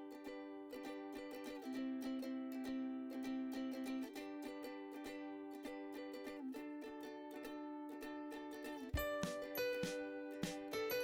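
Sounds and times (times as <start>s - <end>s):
strummed plucked-string instrumental: 0.0s - 11.0s.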